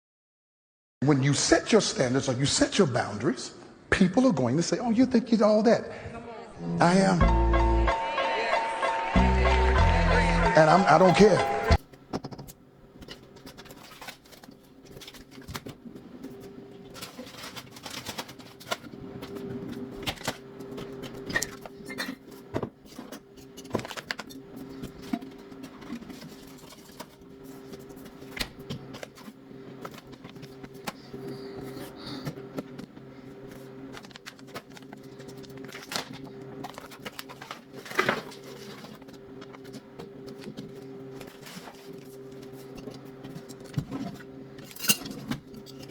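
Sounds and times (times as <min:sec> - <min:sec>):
objects handled with clicks and rustles: 0:11.8 - 0:45.9.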